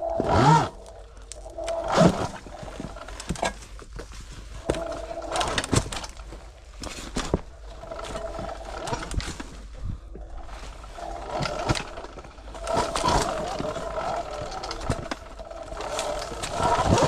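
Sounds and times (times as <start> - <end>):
drawn-out groaning tone: 0.0 - 3.1, 4.6 - 6.2.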